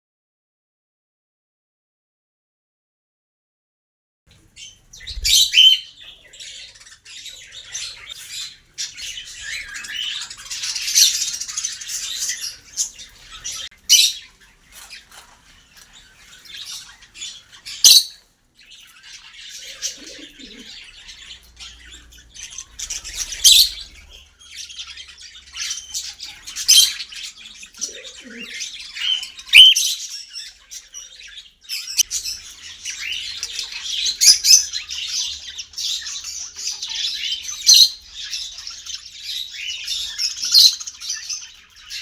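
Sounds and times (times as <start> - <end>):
parrots chattering and chirping: 4.3 - 42.0
sharp loud parrot squawks: 29.5 - 29.9.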